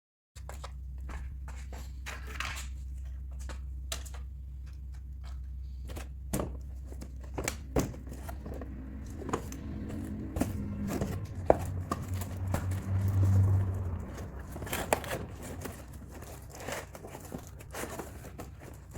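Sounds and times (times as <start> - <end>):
low hum: 0.4 - 18.9.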